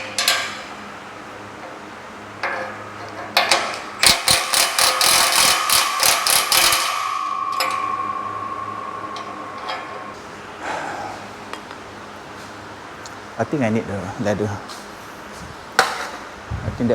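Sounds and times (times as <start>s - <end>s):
wrench clicking on metal: 2.4s - 7.9s
steel ringing tone: 4.0s - 11.5s.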